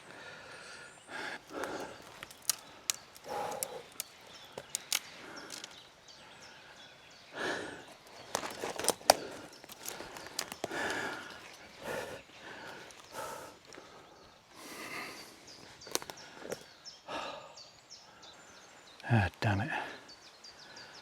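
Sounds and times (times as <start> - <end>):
twigs cracking: 1.1 - 6.0, 7.4 - 14.1, 15.1 - 16.8
vegetation brushing: 1.4 - 5.7, 7.9 - 11.6
footsteps through undergrowth: 1.4 - 5.8, 7.9 - 13.8.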